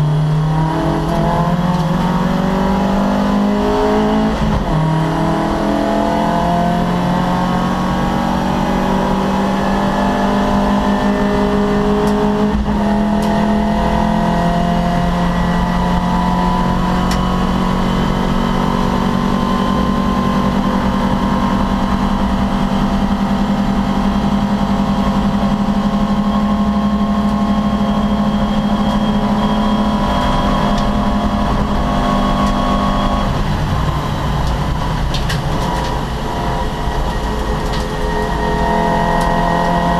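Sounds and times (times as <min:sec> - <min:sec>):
racing car engine revving: 0:00.0 - 0:39.9
gear change: 0:09.9 - 0:39.9.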